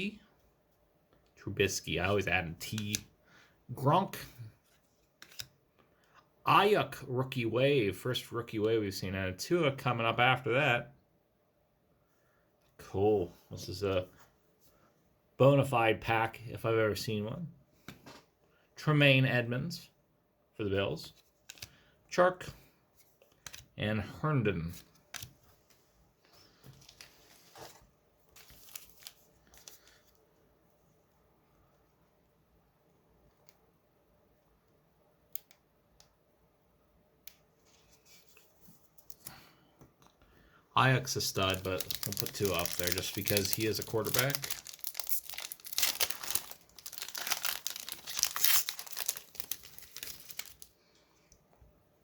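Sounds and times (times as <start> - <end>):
trading cards flipped through: 4.7 - 5.6, 21.1 - 21.8, 23.0 - 23.7
wrapper tearing and crinkling: 41.2 - 50.7.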